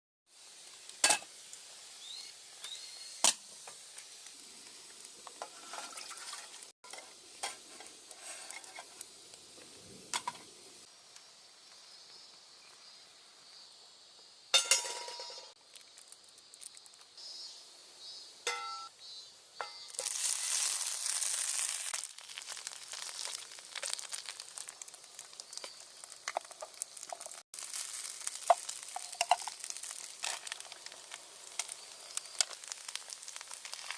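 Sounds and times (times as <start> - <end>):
food sizzling in a pan: 0.3 - 33.9
utensils clinking against pan: 14.6 - 15.5.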